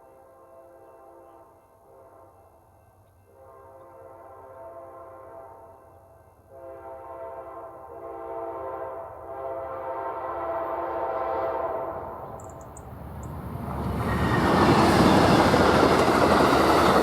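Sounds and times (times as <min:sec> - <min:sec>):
locomotive air horn blasts: 0:03.4 - 0:05.8, 0:06.5 - 0:12.2.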